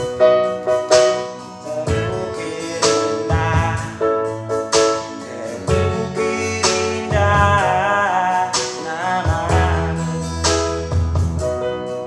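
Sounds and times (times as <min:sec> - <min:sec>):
slow love ballad: 0:00.0 - 0:12.0
person singing: 0:01.6 - 0:10.9.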